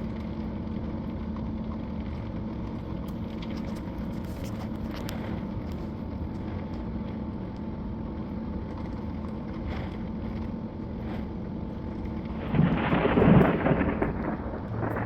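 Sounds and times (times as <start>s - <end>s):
storm background rumble: 9.4s - 15.0s
loud thunder rumble: 12.3s - 15.0s.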